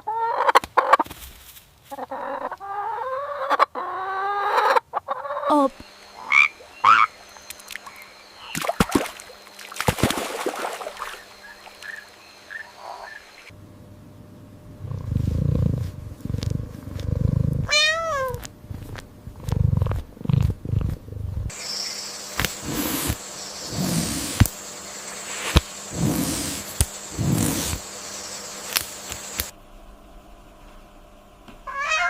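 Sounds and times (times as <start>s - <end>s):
cat purring: 14.7s - 21.6s, 22.6s - 24.5s, 25.3s - 27.8s
cat meowing: 17.7s - 18.4s, 31.7s - 32.0s.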